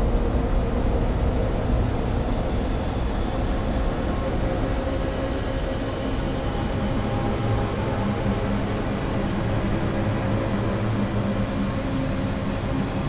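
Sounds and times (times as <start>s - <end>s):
ambient noise drone music: 3.4s - 13.0s.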